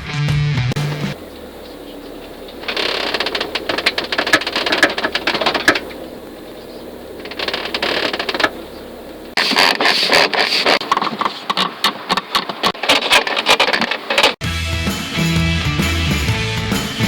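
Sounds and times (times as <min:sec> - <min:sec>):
music: 0:00.0 - 0:01.1, 0:14.4 - 0:17.0
car interior trim squeaking and rattling: 0:00.8 - 0:14.4.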